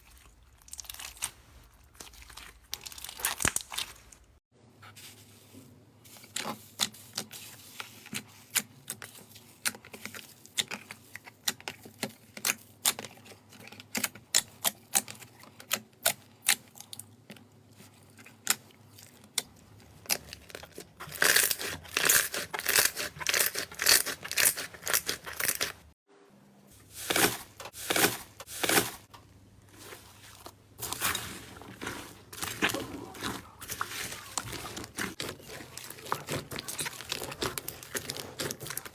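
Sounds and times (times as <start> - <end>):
slime popping and crackling: 0.6 - 4.3.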